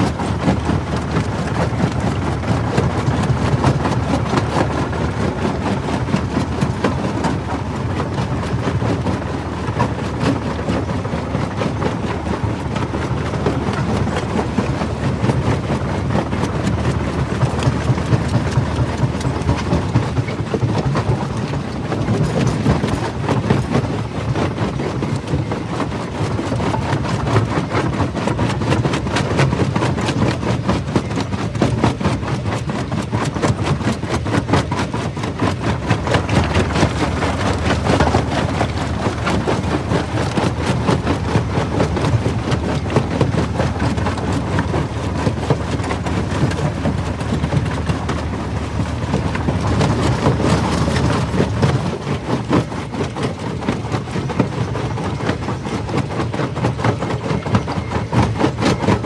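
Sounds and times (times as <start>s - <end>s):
clatter of cracking rock: 28.3s - 59.0s
low machine rumble: 34.4s - 59.0s.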